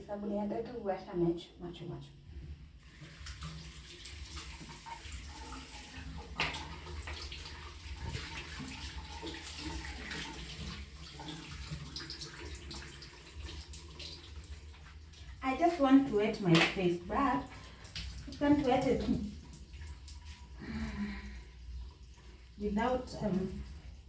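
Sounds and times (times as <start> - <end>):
tap water running and splashing: 2.3 - 24.0.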